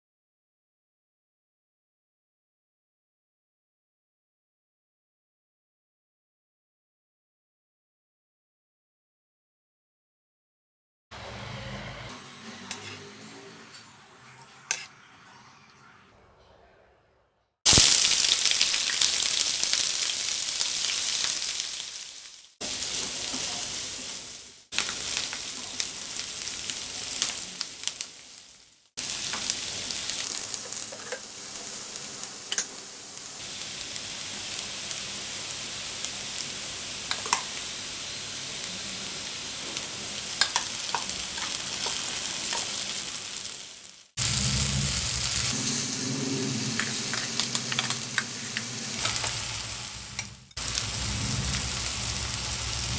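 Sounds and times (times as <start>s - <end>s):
food sizzling in frying pan: 12.2s - 15.0s, 17.7s - 52.9s.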